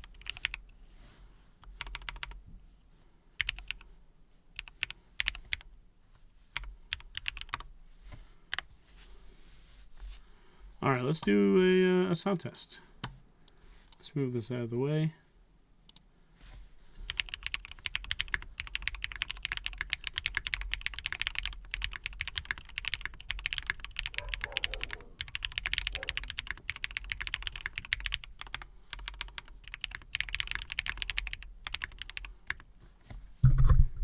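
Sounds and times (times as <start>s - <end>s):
mechanical keyboard typing: 0.0s - 0.7s, 1.7s - 2.4s, 3.4s - 3.8s, 4.6s - 5.7s, 6.6s - 7.7s, 17.1s - 32.7s.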